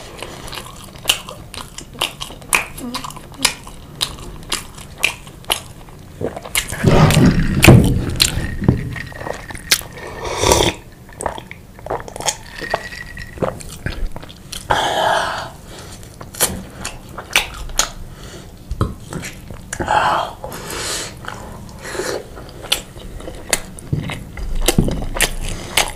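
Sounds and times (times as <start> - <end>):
chewing and wet mouth clicks: 0.5 - 6.8, 16.2 - 18.0, 22.6 - 25.9.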